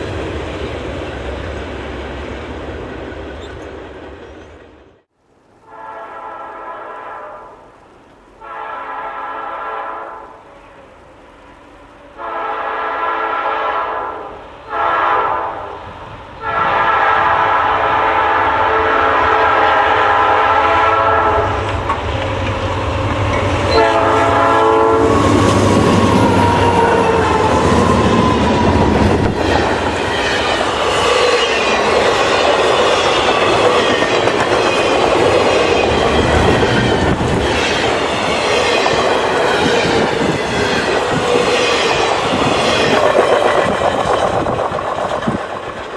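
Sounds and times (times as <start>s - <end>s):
train rumbling past: 0.0s - 45.9s
locomotive air horn blasts: 5.6s - 7.6s, 8.4s - 10.5s, 12.1s - 15.8s, 16.4s - 21.6s, 23.7s - 25.4s
wheels clacking over rail joints: 21.6s - 24.0s, 27.4s - 45.9s.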